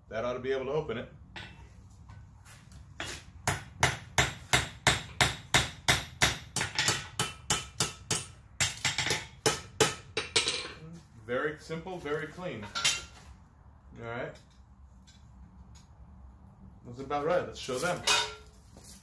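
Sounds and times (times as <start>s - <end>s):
hammer striking steel on anvil: 3.0s - 10.8s.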